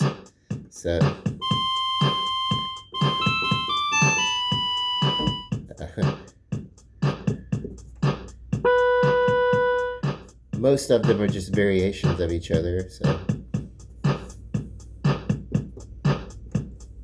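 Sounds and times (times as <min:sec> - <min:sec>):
keyboard drum rhythm: 0:00.0 - 0:17.0
electronic keyboard notes: 0:01.3 - 0:05.6, 0:08.5 - 0:10.3.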